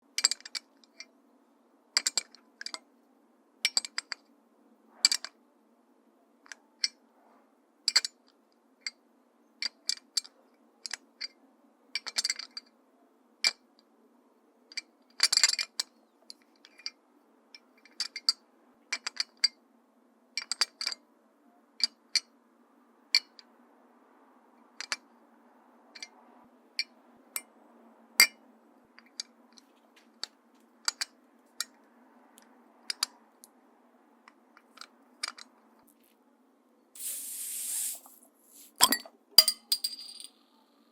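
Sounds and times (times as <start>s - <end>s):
metal bottle opener clinking: 37.0s - 40.3s.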